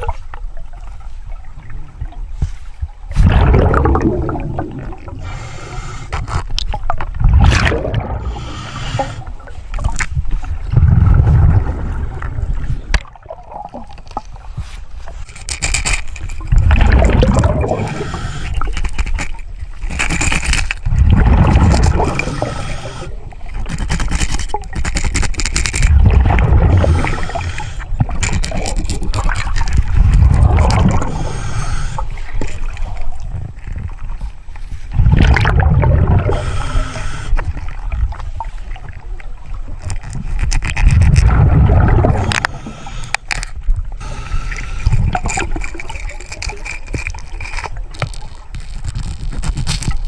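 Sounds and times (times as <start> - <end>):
rumble of exhaled bubbles: 3.1 - 5.3, 6.7 - 14.4, 16.4 - 18.8, 20.8 - 23.4, 25.8 - 34.1, 34.9 - 39.7, 40.6 - 42.8, 43.7 - 47.1
regulator hiss on inhale: 5.1 - 6.4, 8.2 - 9.4, 17.7 - 19.2, 21.8 - 24.0, 26.7 - 28.4, 30.9 - 32.4, 36.3 - 37.8, 42.1 - 45.6.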